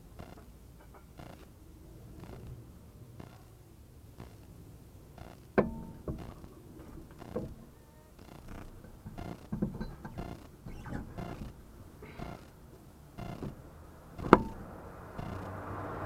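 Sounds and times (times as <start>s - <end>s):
suspension clunking: 5.2s - 16.0s.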